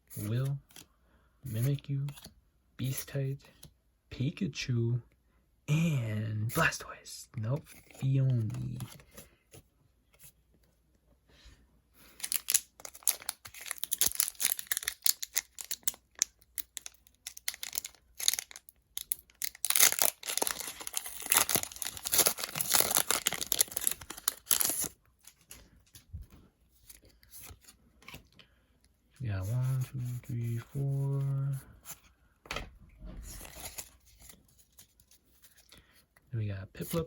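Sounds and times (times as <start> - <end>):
foil wrapper tearing and crinkling: 12.2 - 25.0.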